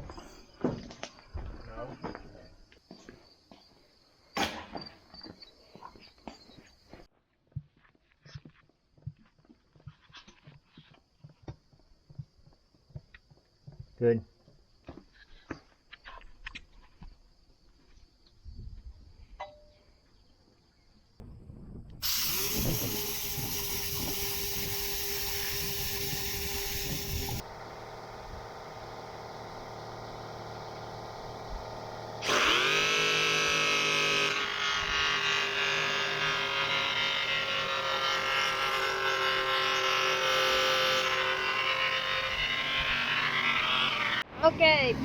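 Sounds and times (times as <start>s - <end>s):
electric motor humming: 22.0s - 44.3s.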